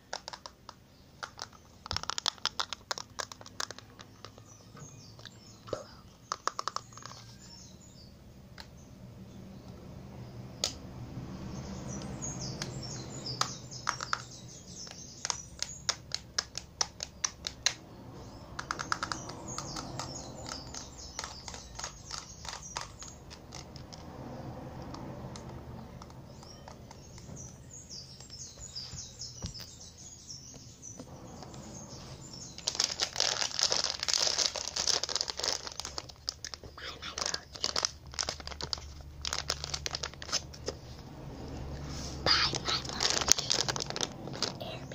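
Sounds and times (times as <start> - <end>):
high rustling or crinkling: 31.1 - 41.0, 41.8 - 44.9
soft rustle: 41.8 - 42.2.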